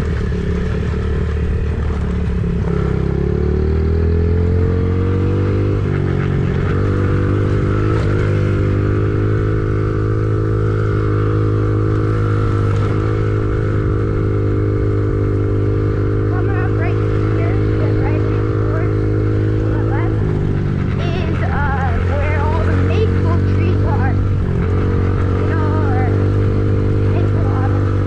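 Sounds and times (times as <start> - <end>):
engine running: 0.0 - 28.0.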